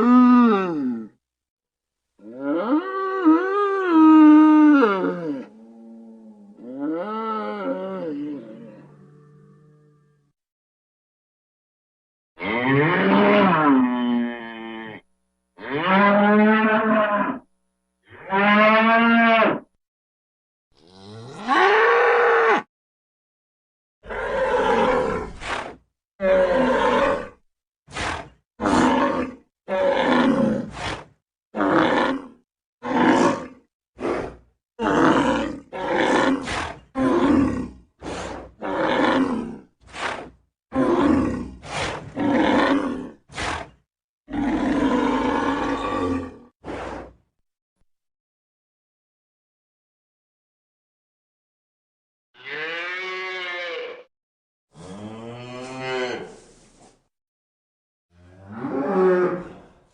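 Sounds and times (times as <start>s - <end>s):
cattle mooing and bellowing: 18.1s - 19.6s, 20.8s - 22.7s, 52.4s - 54.1s, 54.8s - 56.3s.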